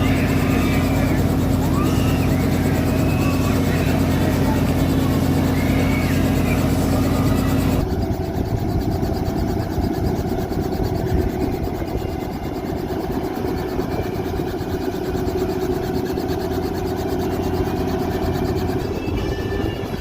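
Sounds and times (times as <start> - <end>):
helicopter engine and rotor: 0.0 - 20.0.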